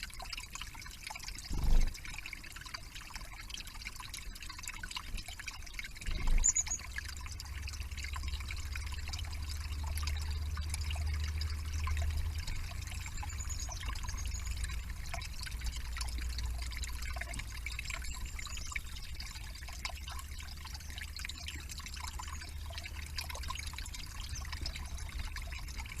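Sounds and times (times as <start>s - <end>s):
trickle of running water: 0.0s - 26.0s
faint high bird chirps: 6.2s - 7.0s.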